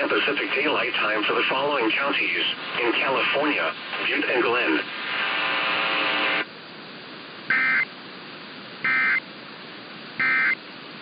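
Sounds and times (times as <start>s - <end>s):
steady radio hiss: 0.0s - 11.0s
raspy two-tone data warble bursts: 7.5s - 7.9s, 8.9s - 9.2s, 10.2s - 10.6s.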